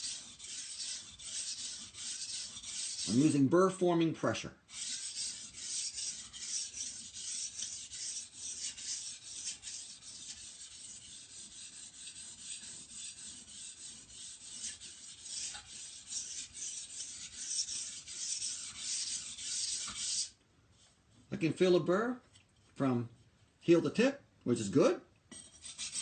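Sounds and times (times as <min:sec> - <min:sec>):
knife scraping on whetstone: 0:00.0 - 0:03.4, 0:04.7 - 0:20.4, 0:25.3 - 0:26.0.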